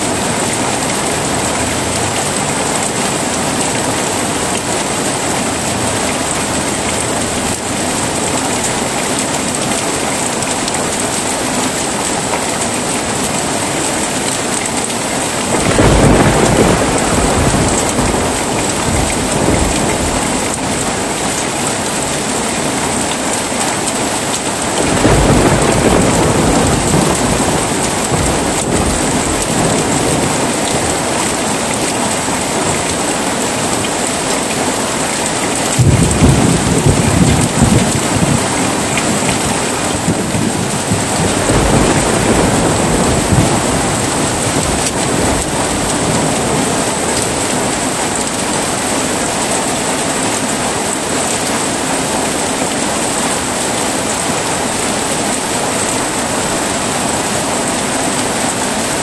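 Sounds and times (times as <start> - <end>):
heavy rain falling: 0.0 - 59.0
thunder rumbling: 14.2 - 33.8, 35.3 - 50.1.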